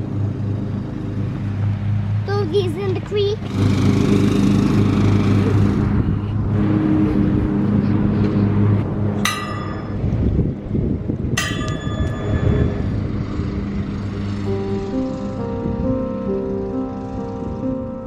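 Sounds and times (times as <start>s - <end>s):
low engine-like drone: 0.0s - 18.0s
sharp ringing notes: 9.2s - 10.4s, 11.4s - 18.0s.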